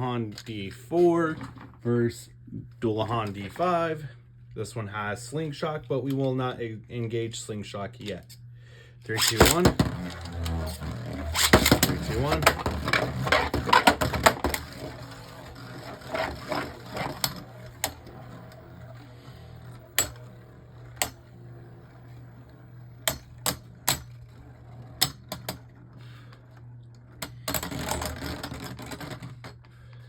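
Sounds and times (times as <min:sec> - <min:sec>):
spinning tops clattering: 0:09.2 - 0:24.1.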